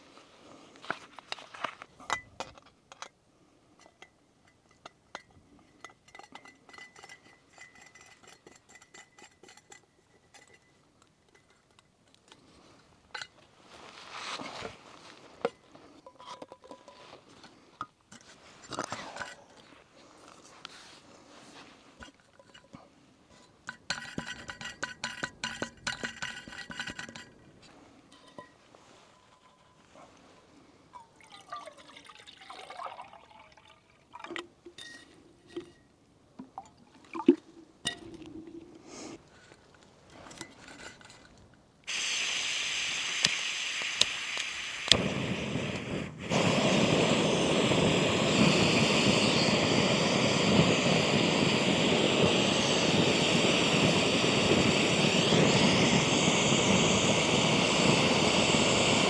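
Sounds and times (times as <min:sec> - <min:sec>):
metal pots and utensils clinking: 0:03.8 - 0:12.0, 0:15.5 - 0:17.4, 0:22.0 - 0:27.4, 0:28.1 - 0:29.9.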